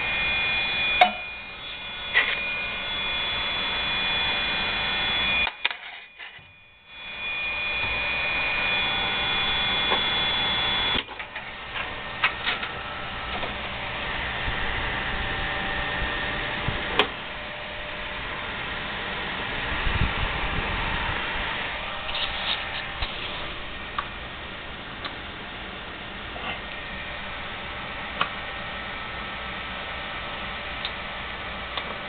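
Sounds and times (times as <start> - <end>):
motherboard speaker buzzing: 0.0 - 11.1
computer hum: 0.0 - 20.4.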